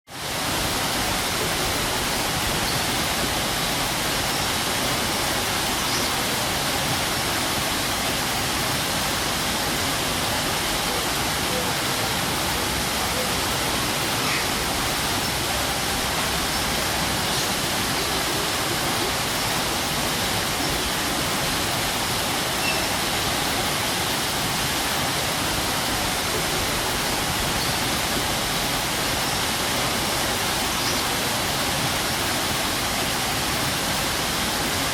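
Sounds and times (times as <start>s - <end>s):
waterfall rushing: 0.1s - 34.9s.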